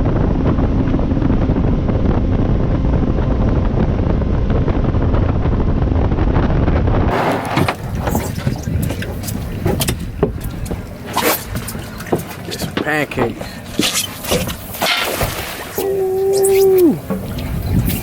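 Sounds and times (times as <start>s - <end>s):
boat running at speed: 0.0s - 18.0s
wind buffeting microphone: 0.0s - 18.0s.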